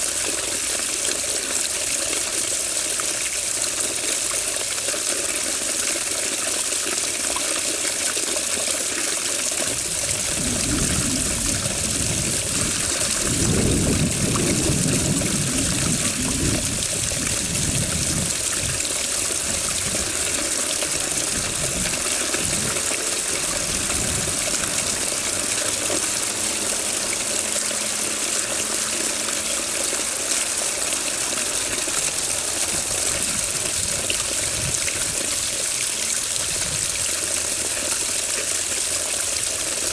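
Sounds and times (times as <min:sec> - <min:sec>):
running water: 0:00.0 - 0:39.9
low rumbles: 0:09.8 - 0:18.8.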